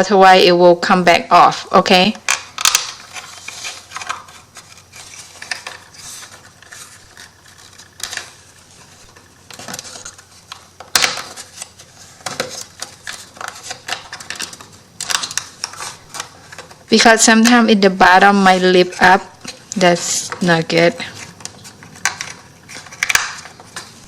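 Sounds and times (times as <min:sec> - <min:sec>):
wood pieces clicking and knocking: 0:21.4 - 0:24.0.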